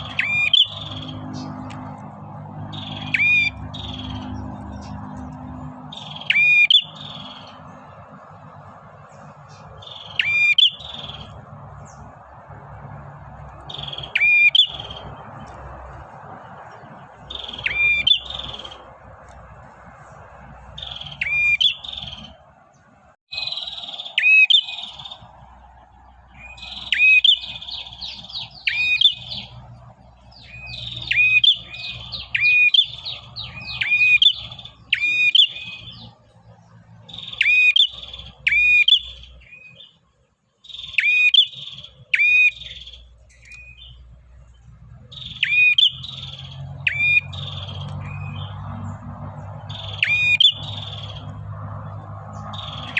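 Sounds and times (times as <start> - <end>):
bird calling: 0.0 - 7.8, 9.1 - 12.1, 13.4 - 15.6, 16.6 - 19.4, 20.1 - 22.4, 23.3 - 25.4, 26.3 - 36.2, 37.1 - 40.0, 40.6 - 44.0, 45.0 - 52.9.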